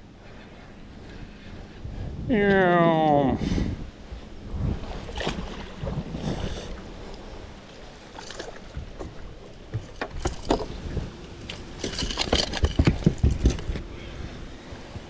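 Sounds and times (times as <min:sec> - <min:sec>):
wind on microphone: 0:01.2 - 0:07.6
clicks and knocks of gear: 0:08.1 - 0:13.9.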